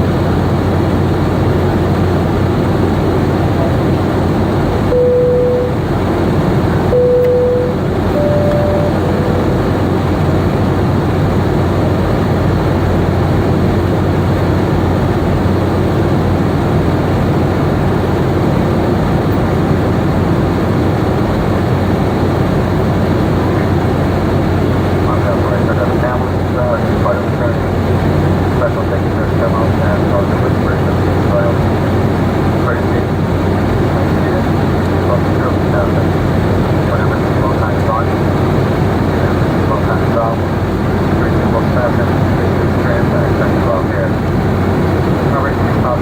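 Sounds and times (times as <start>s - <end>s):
airliner cabin engine drone: 0.0s - 46.0s
short electronic tones: 4.9s - 5.9s, 6.9s - 10.2s.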